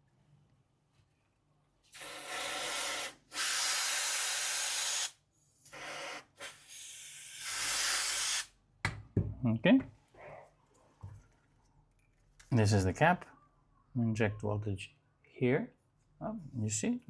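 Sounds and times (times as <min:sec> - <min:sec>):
aerosol spray hissing: 0:01.9 - 0:08.5.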